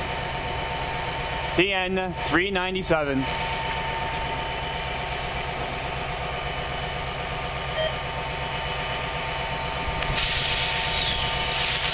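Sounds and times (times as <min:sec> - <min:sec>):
engine idling rumble: 0:00.0 - 0:11.9
short beep: 0:07.7 - 0:08.0
rushing hiss: 0:10.2 - 0:11.9.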